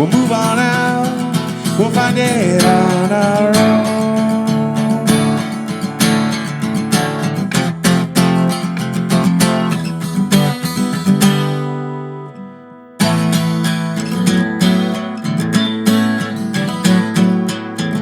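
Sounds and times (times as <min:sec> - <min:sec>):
acoustic guitar strumming chords: 0:00.0 - 0:18.0.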